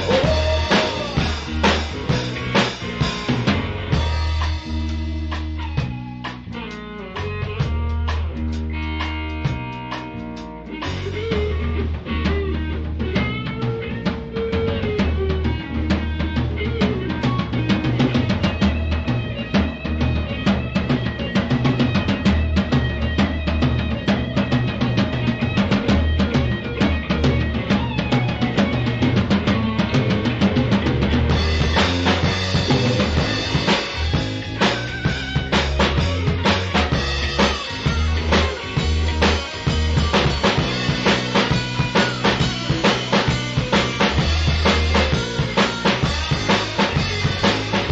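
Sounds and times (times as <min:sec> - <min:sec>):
bending guitar notes: 0:00.0 - 0:47.9
blues rock band instrumental: 0:00.0 - 0:47.9
quick drum strokes: 0:19.8 - 0:47.9.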